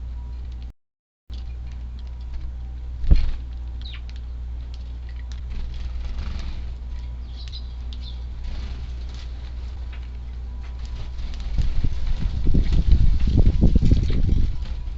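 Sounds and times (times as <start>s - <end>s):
sparrows chirping: 1.3s - 14.9s
wind buffeting microphone: 10.8s - 14.9s.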